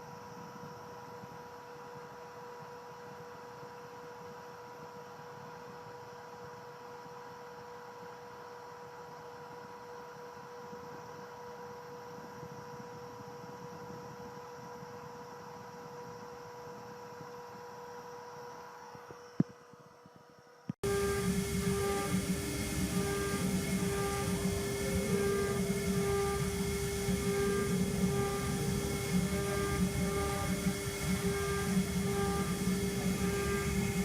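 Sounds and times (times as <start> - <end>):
router spindle humming: 20.8 - 34.0.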